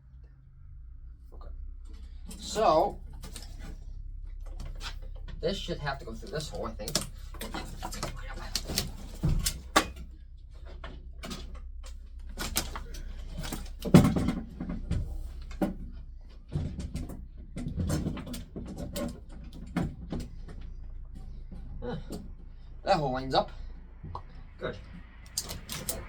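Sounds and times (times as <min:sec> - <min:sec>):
knocks and scrapes of panel handling: 0:06.2 - 0:22.6.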